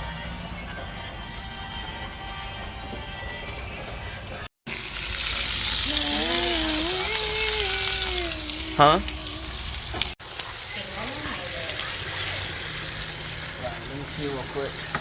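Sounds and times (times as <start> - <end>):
food sizzling on grill: 4.7 - 15.0
person saying huh: 5.8 - 9.6
person's drawn-out voice: 5.8 - 9.6.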